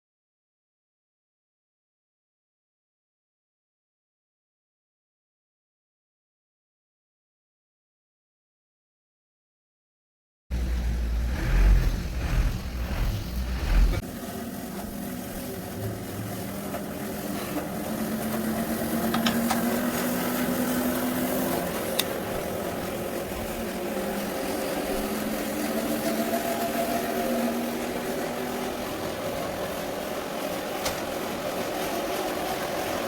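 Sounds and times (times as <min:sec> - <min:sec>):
low thumping and rumble: 0:10.5 - 0:14.0
band saw engine running: 0:10.5 - 0:14.1.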